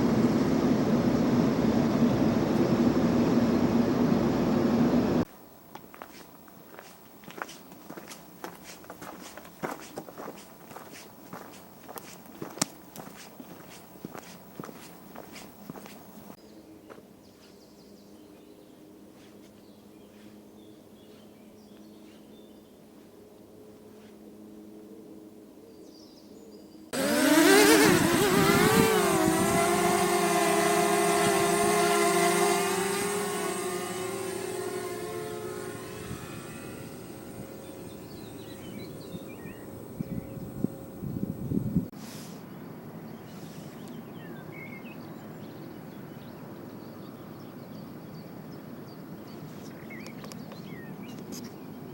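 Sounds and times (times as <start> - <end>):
drone propellers humming: 0.0 - 5.3, 27.0 - 41.9
small birds chirping: 5.4 - 22.8, 27.8 - 41.6, 42.4 - 51.9
low rushing background noise: 29.8 - 50.0.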